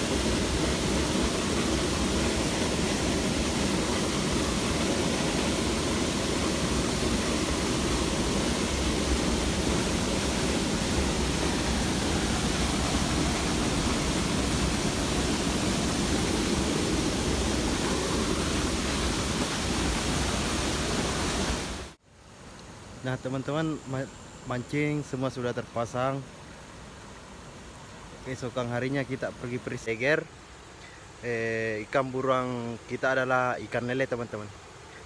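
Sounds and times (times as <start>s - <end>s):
loud rushing noise: 0.0s - 22.0s.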